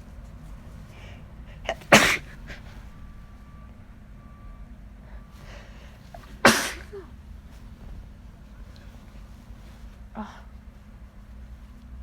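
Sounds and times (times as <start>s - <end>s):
person sneezing: 1.0s - 2.8s, 6.1s - 7.2s.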